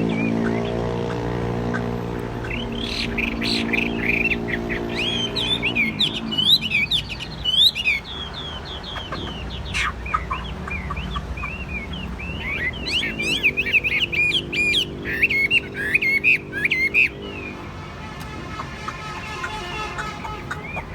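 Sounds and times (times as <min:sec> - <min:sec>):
bird singing whistled phrases: 0:10.8 - 0:17.5.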